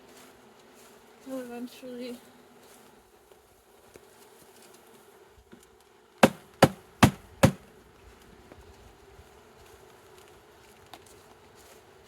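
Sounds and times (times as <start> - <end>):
box being banged: 6.2 - 7.6.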